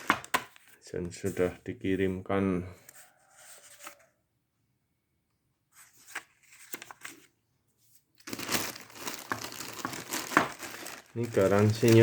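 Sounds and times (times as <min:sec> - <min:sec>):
paper rustling: 0:05.7 - 0:12.0
paper crinkling: 0:08.1 - 0:12.0.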